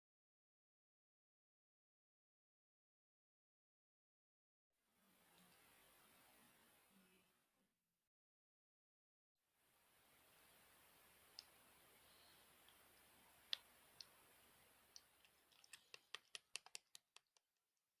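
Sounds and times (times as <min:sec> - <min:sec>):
faint hiss: 0:09.6 - 0:16.8.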